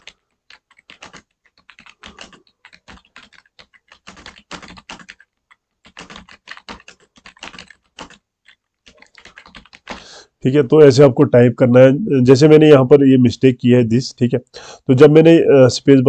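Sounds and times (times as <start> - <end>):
computer keyboard typing: 0.0 - 10.1.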